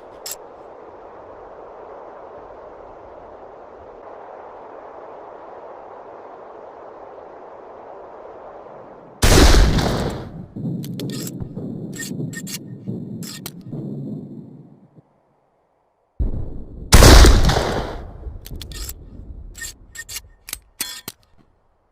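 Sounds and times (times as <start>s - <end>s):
rifle shot echoing: 9.2s - 10.4s, 16.9s - 18.2s
rifle action clicks: 19.6s - 21.5s.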